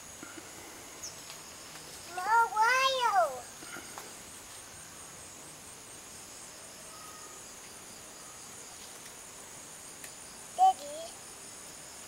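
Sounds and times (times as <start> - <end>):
insects trilling: 0.0 - 12.0
faint whistle: 6.9 - 7.4.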